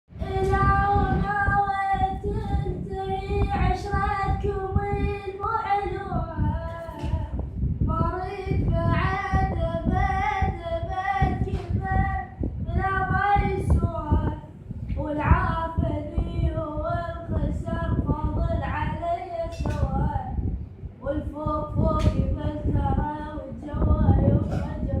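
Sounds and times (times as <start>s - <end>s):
low rumble: 0.1s - 25.0s
high voice singing unaccompanied: 0.2s - 25.0s.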